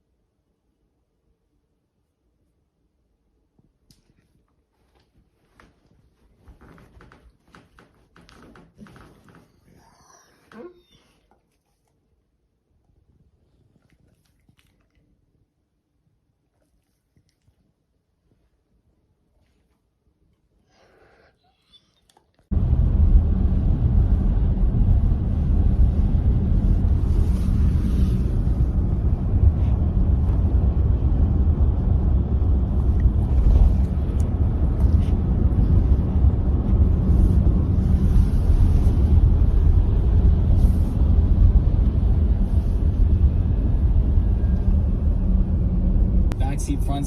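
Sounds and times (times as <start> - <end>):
loud low rumble: 22.5 - 47.0.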